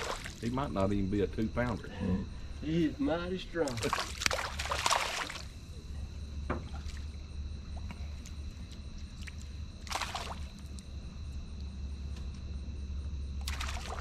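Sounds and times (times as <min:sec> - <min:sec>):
short splash: 0:00.0 - 0:00.5, 0:03.7 - 0:05.5, 0:09.2 - 0:10.6, 0:13.4 - 0:14.0
water lapping around a boat: 0:00.0 - 0:00.7, 0:03.5 - 0:11.7, 0:13.2 - 0:14.0
steady low hum: 0:00.0 - 0:14.0.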